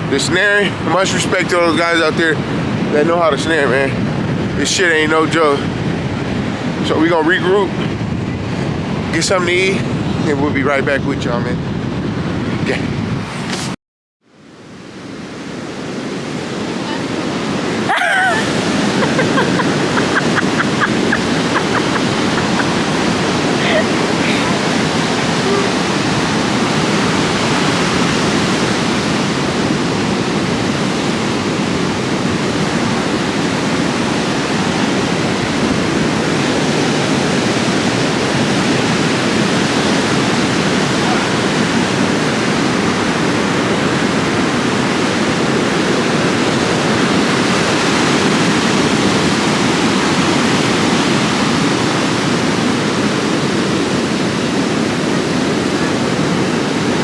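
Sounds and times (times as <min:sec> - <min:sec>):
ocean surf breaking: 0:14.6 - 0:57.0.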